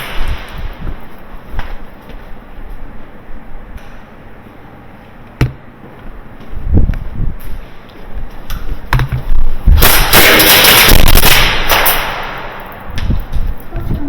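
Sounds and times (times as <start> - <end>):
airsoft guns firing: 9.8 - 12.8.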